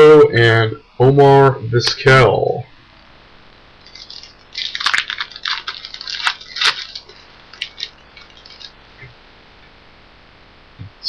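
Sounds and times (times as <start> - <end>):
plastic wrapper crinkling and tearing: 3.8 - 8.8.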